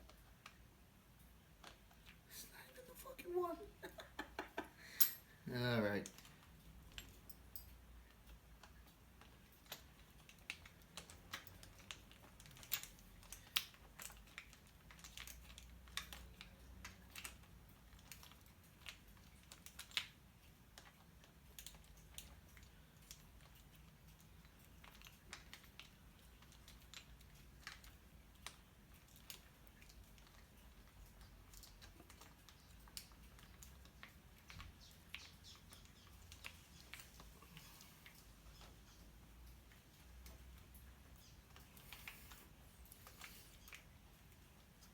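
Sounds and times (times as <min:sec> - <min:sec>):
clicks and taps of metal tools: 0:05.0 - 0:05.3.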